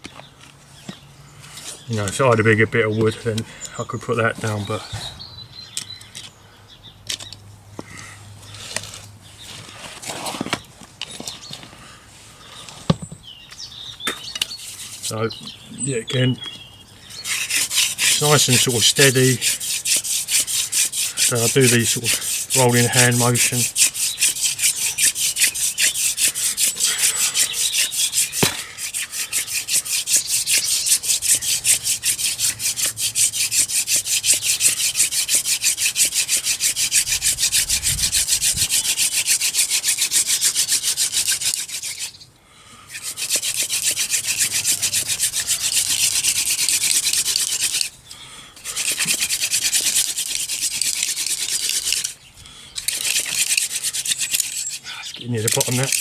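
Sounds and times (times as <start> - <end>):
wooden hand drill rubbing: 14.4 - 15.6, 17.1 - 42.2, 42.9 - 56.0.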